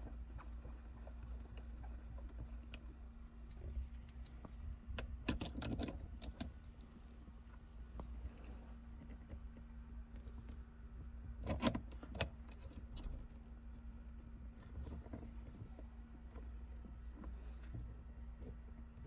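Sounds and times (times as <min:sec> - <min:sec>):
steady low hum: 0:00.0 - 0:19.0
shift knob clicking and rattling: 0:05.0 - 0:06.9, 0:11.4 - 0:13.2.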